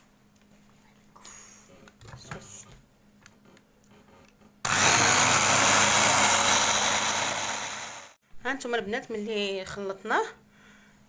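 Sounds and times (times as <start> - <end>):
electric blender running: 4.7 - 8.2.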